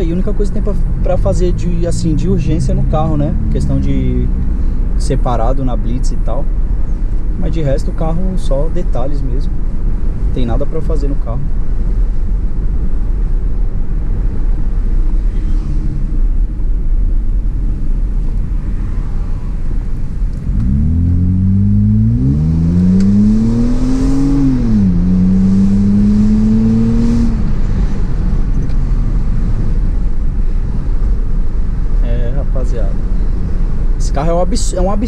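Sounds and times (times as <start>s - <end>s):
car engine accelerating: 0.0s - 5.4s, 15.0s - 32.0s.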